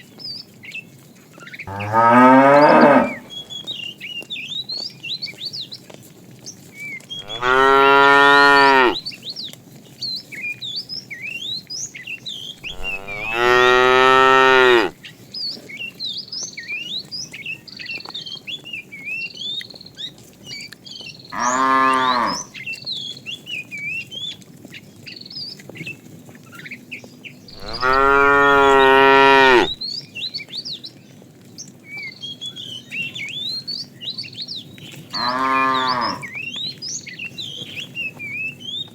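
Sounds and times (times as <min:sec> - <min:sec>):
small birds chirping: 0:00.0 - 0:38.9
cows mooing: 0:01.7 - 0:03.4, 0:07.2 - 0:09.0, 0:12.6 - 0:15.0, 0:21.4 - 0:22.5, 0:27.6 - 0:29.8, 0:35.2 - 0:36.3.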